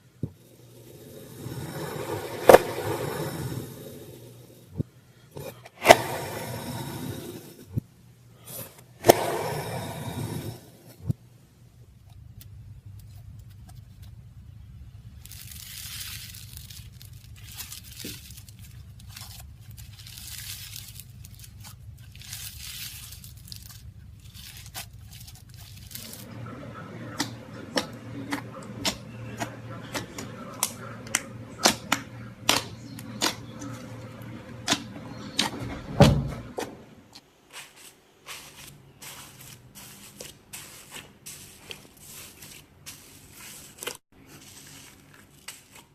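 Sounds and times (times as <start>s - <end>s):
slime stretching and tearing: 15.1s - 26.2s.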